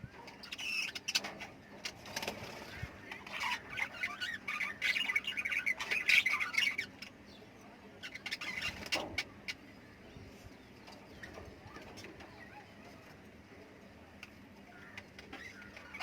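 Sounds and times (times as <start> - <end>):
lovebirds squawking and chattering: 0.0 - 13.3, 14.2 - 16.0.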